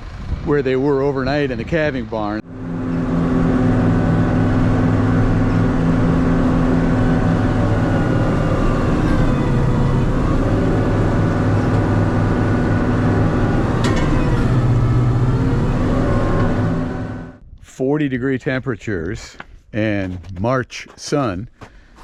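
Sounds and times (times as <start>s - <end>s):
tractor engine running: 0.0s - 17.4s.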